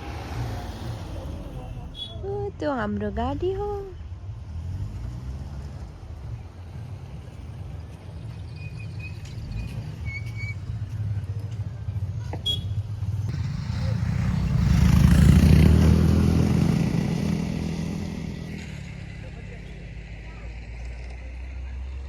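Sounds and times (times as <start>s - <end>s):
vehicle engine rumbling: 0.0s - 22.0s.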